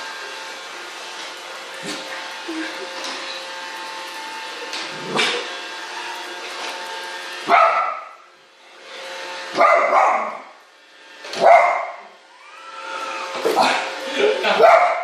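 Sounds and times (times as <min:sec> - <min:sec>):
robot vacuum motor hum: 0:00.0 - 0:07.5, 0:10.8 - 0:14.6
dog barking: 0:07.5 - 0:08.2, 0:09.6 - 0:10.5, 0:11.4 - 0:12.0, 0:14.6 - 0:15.0.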